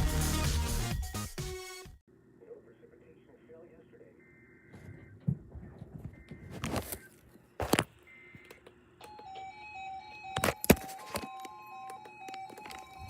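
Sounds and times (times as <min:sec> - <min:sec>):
beeping electronic melody: 0:08.1 - 0:13.0.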